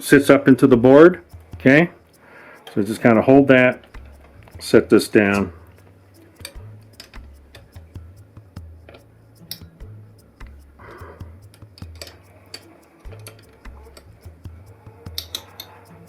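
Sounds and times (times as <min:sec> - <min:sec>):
small parts clicking and tapping: 0:01.2 - 0:08.0, 0:08.6 - 0:09.8, 0:10.4 - 0:16.0.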